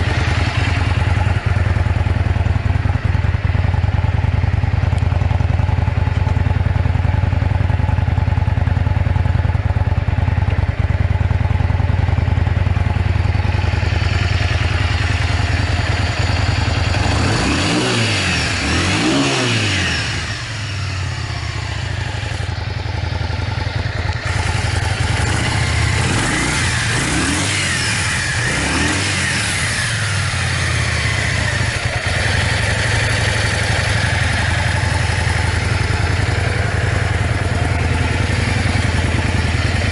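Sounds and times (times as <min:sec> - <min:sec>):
motorcycle engine idling and revving: 0:00.0 - 0:39.9.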